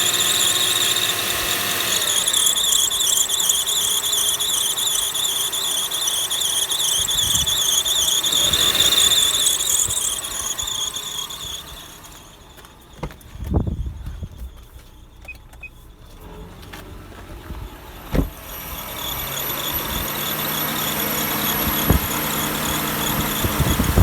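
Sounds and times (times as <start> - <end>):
drive belt squealing: 0.0 - 24.0
low thumps: 17.5 - 18.5, 21.6 - 24.0.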